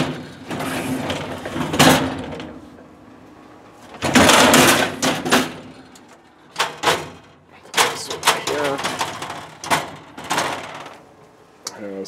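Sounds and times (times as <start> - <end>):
metal parts rattling and scraping: 0.0 - 2.6, 3.9 - 5.8, 6.5 - 11.0.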